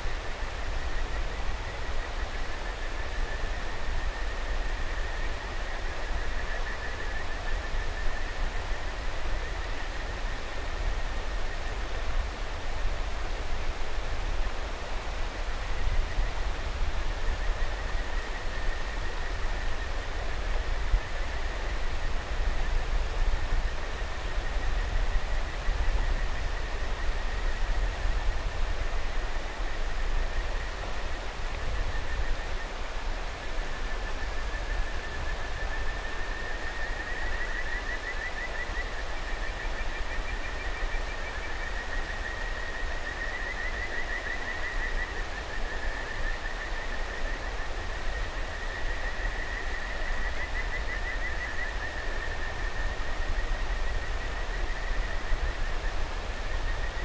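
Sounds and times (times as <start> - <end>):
frogs trilling chorus: 0.4 - 11.7, 29.0 - 57.0.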